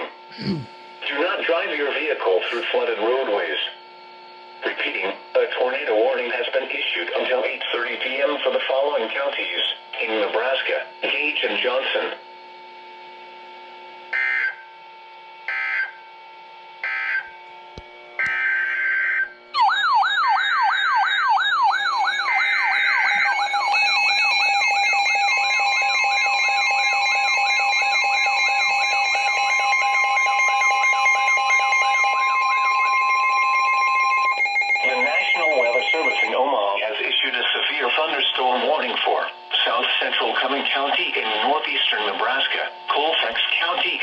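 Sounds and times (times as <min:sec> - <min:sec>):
weather radio warbling alarm: 0:00.0 - 0:12.2, 0:14.1 - 0:17.4, 0:18.1 - 0:44.0
steady attention tone: 0:33.5 - 0:36.9
digital data bursts: 0:34.7 - 0:38.2.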